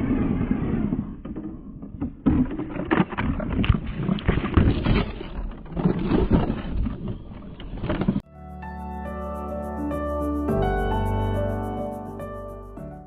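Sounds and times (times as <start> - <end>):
toy car crunching over rough ground: 0.9 - 8.2.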